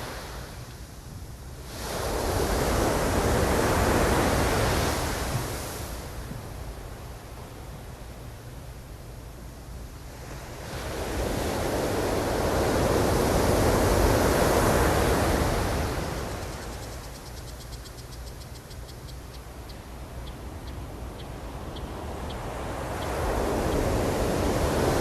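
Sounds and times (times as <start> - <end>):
ocean wave breaking on shore: 1.6 - 6.4, 22.0 - 25.0.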